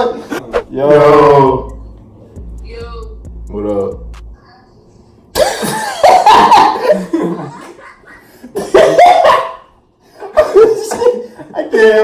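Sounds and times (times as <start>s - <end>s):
coughing: 5.4s - 9.7s
loud laughing: 5.4s - 12.0s.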